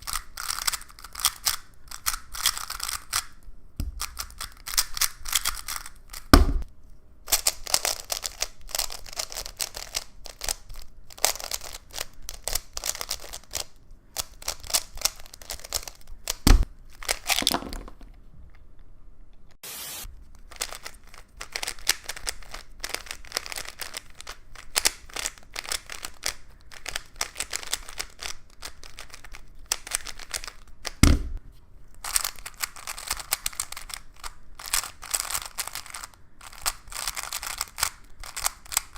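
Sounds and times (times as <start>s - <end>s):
plastic cubes clicking as turned: 0.0s - 6.4s, 7.3s - 18.0s, 20.4s - 31.0s, 32.0s - 38.9s
sharp knocks: 6.3s - 6.7s.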